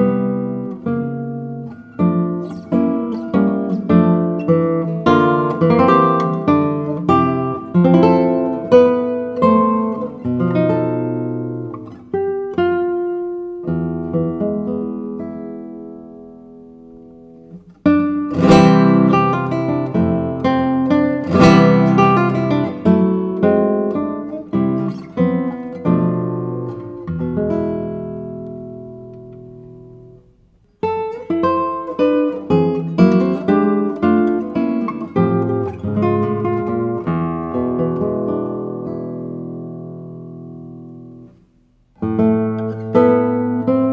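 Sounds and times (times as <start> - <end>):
acoustic string instrument picking: 17.4 - 30.2.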